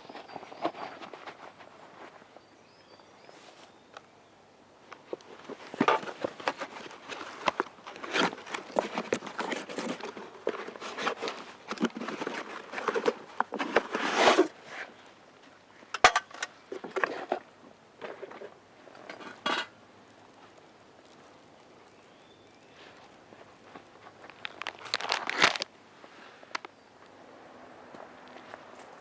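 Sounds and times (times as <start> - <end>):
camp cooking gear rustling: 0.0 - 3.9, 4.9 - 26.7.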